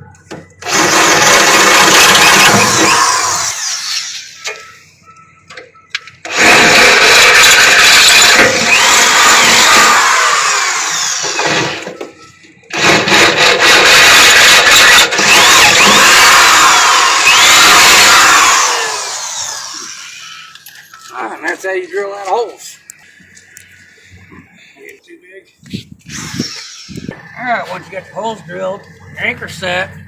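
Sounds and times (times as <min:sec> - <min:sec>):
electric drill boring through metal: 0:00.6 - 0:04.6, 0:06.2 - 0:12.1, 0:12.7 - 0:21.1, 0:26.1 - 0:27.4.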